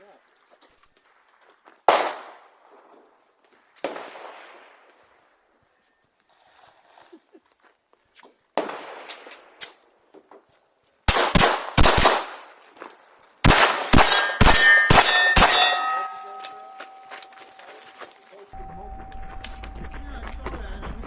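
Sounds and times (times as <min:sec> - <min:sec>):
pistol shots: 0:01.9 - 0:02.9, 0:03.8 - 0:05.1, 0:08.6 - 0:09.7, 0:11.1 - 0:17.6
steel plates clanging: 0:12.4 - 0:18.4.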